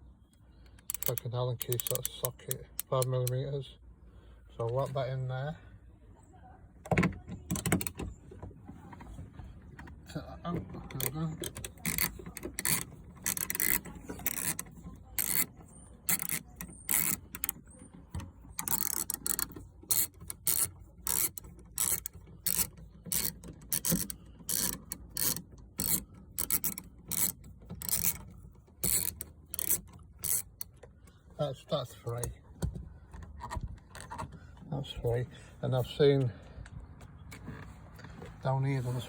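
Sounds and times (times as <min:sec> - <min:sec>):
socket ratchet clicking: 0:00.7 - 0:03.4, 0:11.0 - 0:15.5, 0:16.1 - 0:17.6, 0:18.6 - 0:30.8.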